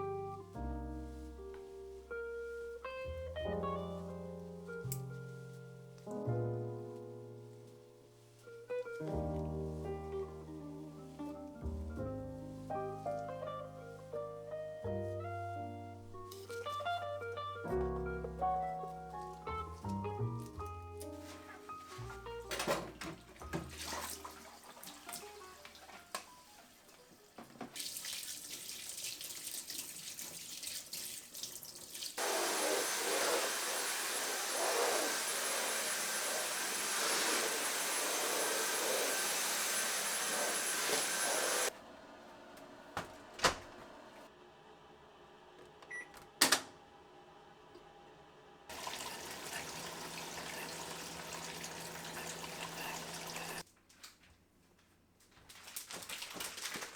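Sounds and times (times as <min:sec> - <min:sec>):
tap water running into sink: 0:22.5 - 0:41.7, 0:48.7 - 0:53.6.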